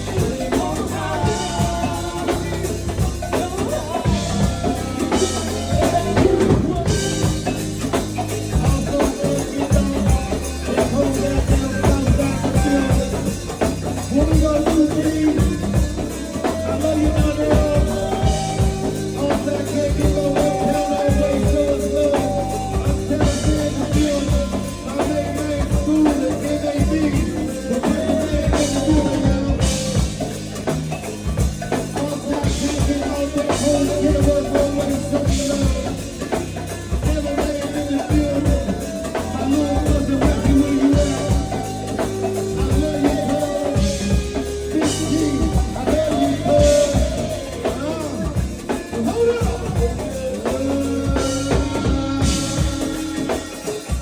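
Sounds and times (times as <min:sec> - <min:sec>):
live band playing jazz: 0:00.0 - 0:54.0.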